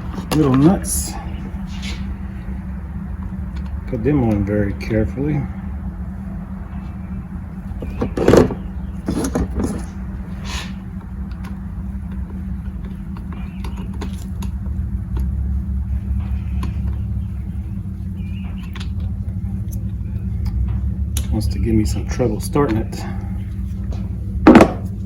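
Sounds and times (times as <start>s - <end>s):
steady low hum: 0.0s - 25.0s.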